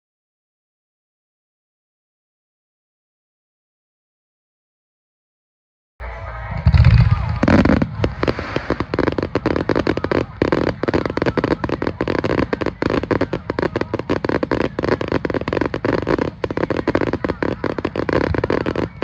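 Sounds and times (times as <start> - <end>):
fireworks crackling: 6.0 - 19.0.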